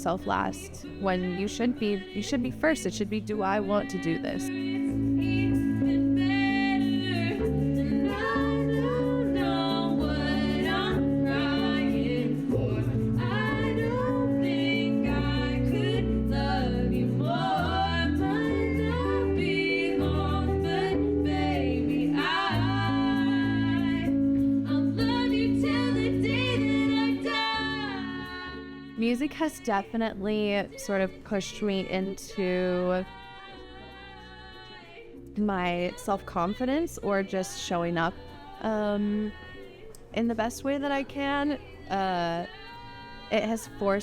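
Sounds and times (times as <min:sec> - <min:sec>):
woman singing: 0:00.0 - 0:44.0
sustained bass and chords: 0:04.6 - 0:29.0.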